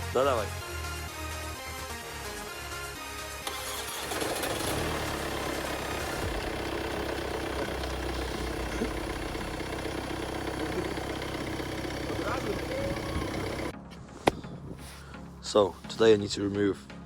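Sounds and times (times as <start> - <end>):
car engine idling: 3.5 - 13.7.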